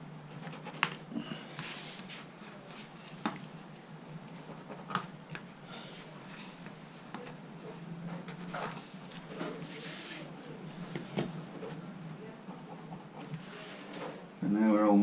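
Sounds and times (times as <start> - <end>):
low room hiss: 0.0 - 15.0
soft rubbing: 12.5 - 14.3.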